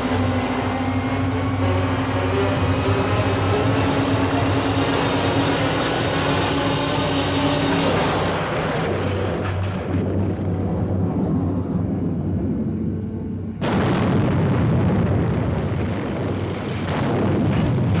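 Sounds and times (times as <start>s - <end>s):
low engine hum: 0.0s - 14.2s
loud crash: 13.6s - 18.0s.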